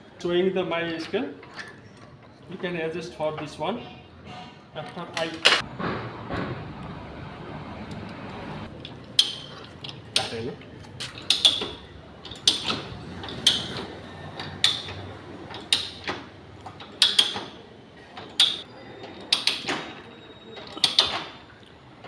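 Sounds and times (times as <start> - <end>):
metal tools clicking and knocking: 8.7 - 17.6, 18.2 - 18.7, 20.6 - 21.4.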